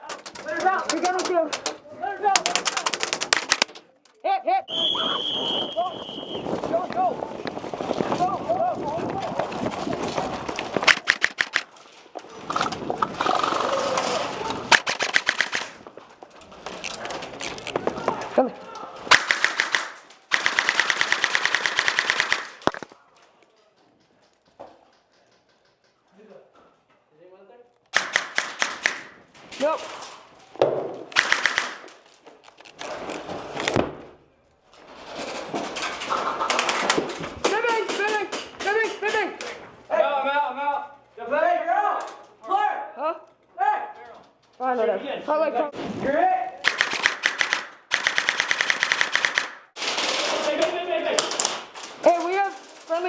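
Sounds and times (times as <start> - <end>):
airsoft guns rapid firing: 2.3 - 3.8, 10.6 - 11.7, 14.7 - 15.8, 19.1 - 22.9, 27.9 - 29.2, 31.1 - 32.0, 46.6 - 50.4
rustling movement: 5.5 - 19.1.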